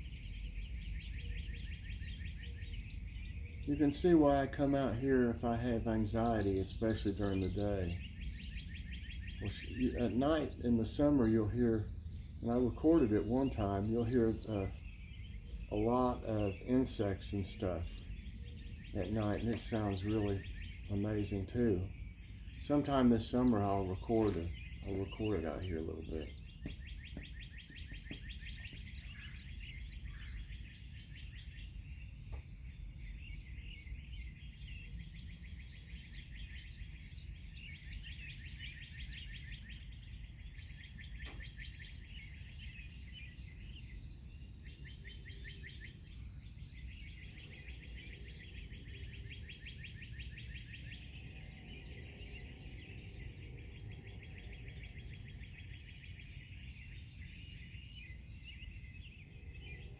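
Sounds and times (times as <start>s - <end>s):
low outdoor rumble: 0.0s - 59.9s
songbirds chirping and trilling: 0.0s - 59.9s.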